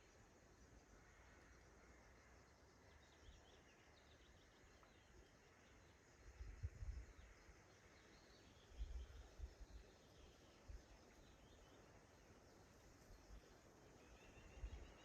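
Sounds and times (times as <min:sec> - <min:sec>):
faint high bird chirps: 0:02.8 - 0:12.0, 0:13.1 - 0:15.0.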